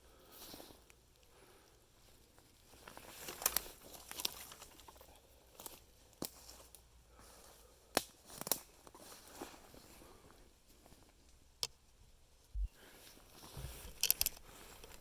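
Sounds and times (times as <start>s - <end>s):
dry twigs crackling and snapping: 2.7s - 6.8s, 7.9s - 9.1s, 13.7s - 15.0s.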